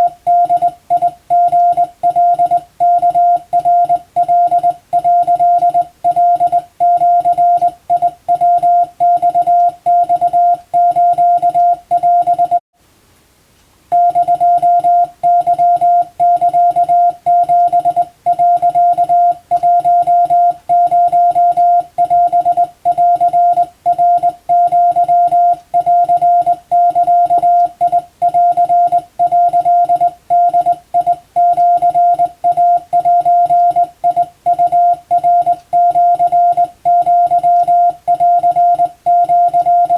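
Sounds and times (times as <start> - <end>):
morse code beeps: 0.0 - 12.6, 13.9 - 39.9.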